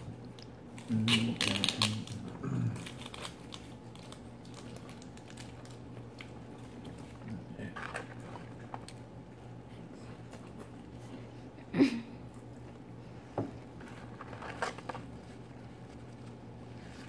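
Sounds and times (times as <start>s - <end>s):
chewing food: 0.0s - 11.1s
steady low hum: 0.0s - 17.0s
clicks and rustles: 13.5s - 17.0s.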